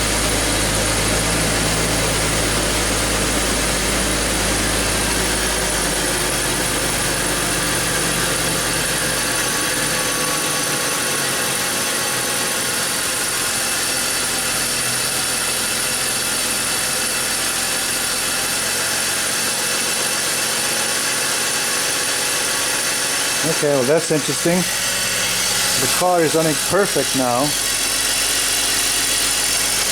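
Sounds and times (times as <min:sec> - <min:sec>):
car engine idling: 0:00.0 - 0:16.3, 0:22.5 - 0:29.9.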